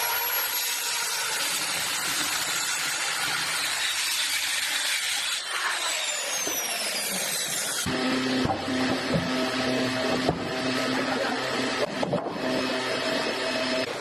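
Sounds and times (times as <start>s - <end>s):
power tool cutting wood: 0.0s - 14.0s
high whine sliding down: 7.9s - 14.0s.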